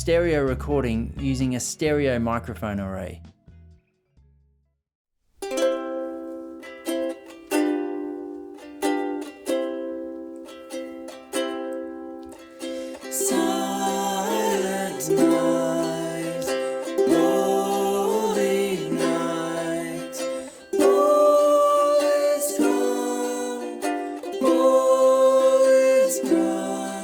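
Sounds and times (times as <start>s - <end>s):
plucked string instrument: 5.4s - 27.0s
person singing: 12.3s - 27.0s.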